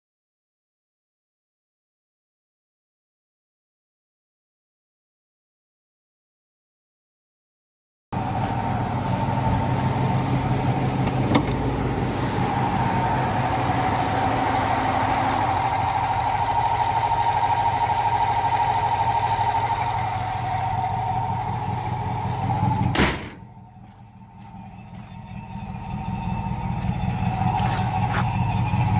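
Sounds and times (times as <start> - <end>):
truck engine idling: 8.2 - 28.9
high-pitched water pump squeal: 12.1 - 23.0, 23.7 - 28.9.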